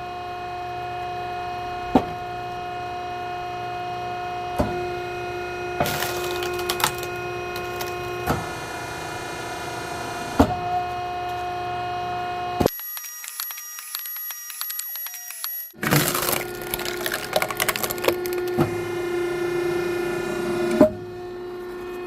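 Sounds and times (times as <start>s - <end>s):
mechanical hum: 0.0s - 22.0s
wooden logs knocking together: 5.8s - 8.4s.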